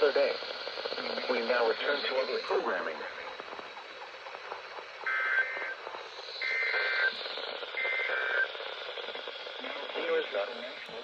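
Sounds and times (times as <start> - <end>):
radio static hiss: 0.0 - 11.0
two-tone warbling data bursts: 5.0 - 10.3.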